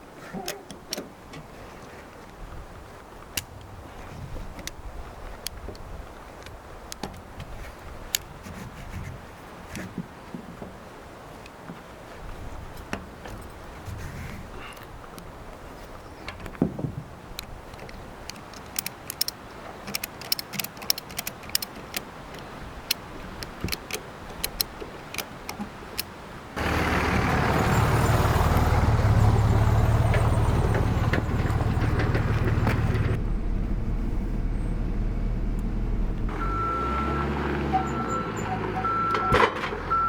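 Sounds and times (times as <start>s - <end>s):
sharp clicks and knocks: 16.3s - 26.1s, 29.8s - 33.2s
heavy vehicle engine running: 26.6s - 40.0s
reversing alarm beeping: 36.3s - 40.0s.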